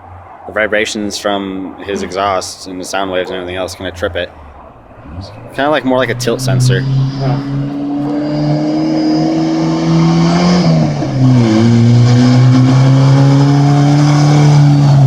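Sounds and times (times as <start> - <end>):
loud exhaust engine accelerating: 4.4 - 15.0.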